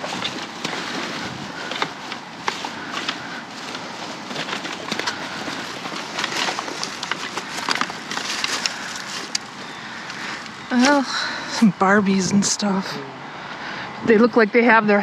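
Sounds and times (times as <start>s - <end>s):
rummaging through household items: 0.0s - 11.0s.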